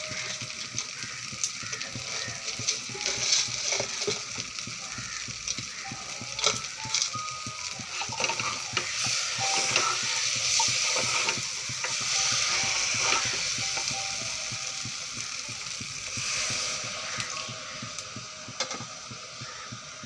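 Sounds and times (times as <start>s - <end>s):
food sizzling in hot oil: 0.0s - 20.0s.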